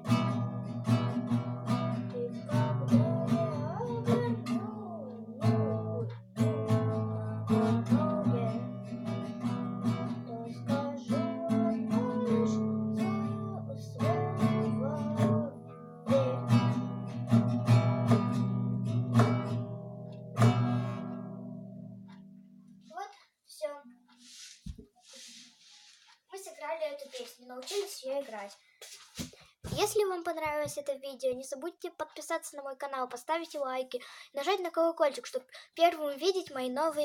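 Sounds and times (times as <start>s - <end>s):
acoustic guitar strumming chords: 0.0s - 22.8s.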